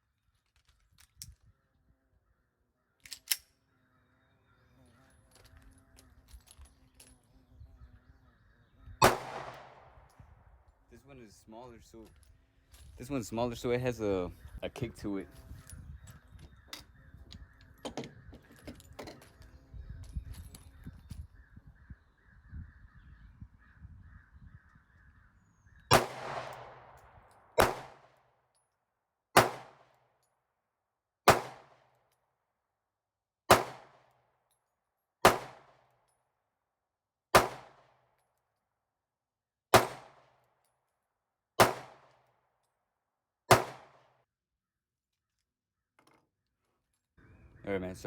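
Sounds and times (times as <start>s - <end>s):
handgun shots with echo: 9.0s - 10.1s, 25.9s - 28.2s, 29.4s - 30.0s, 31.3s - 31.8s, 33.5s - 34.1s, 35.2s - 35.8s, 37.4s - 37.9s, 39.8s - 40.3s, 41.6s - 42.1s, 43.5s - 44.1s.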